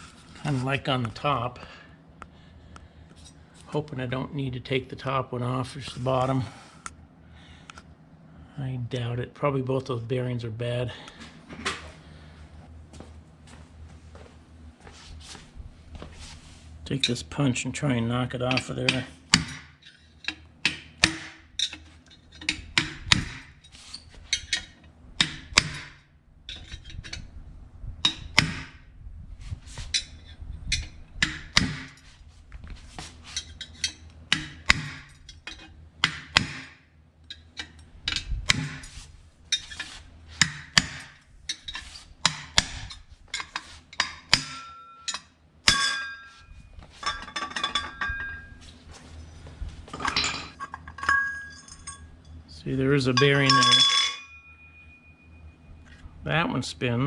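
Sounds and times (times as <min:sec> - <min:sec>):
hammer striking steel punch: 0:18.9 - 0:19.8, 0:20.6 - 0:21.5, 0:22.8 - 0:23.6, 0:25.2 - 0:26.0, 0:28.0 - 0:28.8, 0:31.2 - 0:32.0, 0:34.3 - 0:35.1, 0:36.0 - 0:36.8, 0:38.5 - 0:38.9, 0:40.4 - 0:41.2, 0:42.2 - 0:43.0, 0:44.0 - 0:46.5
ringing metallic clinks: 0:44.5 - 0:46.5, 0:50.0 - 0:52.4, 0:53.2 - 0:55.6.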